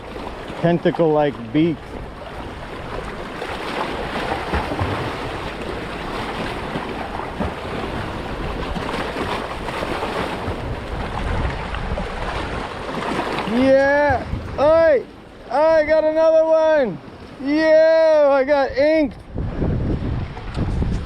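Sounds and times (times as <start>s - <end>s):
sea water washing against boat: 0.0s - 21.0s
wind buffeting microphone: 0.0s - 21.0s.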